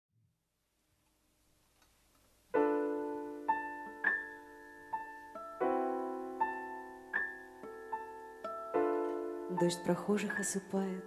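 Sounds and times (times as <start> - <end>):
piano chords and notes: 2.3 - 11.0.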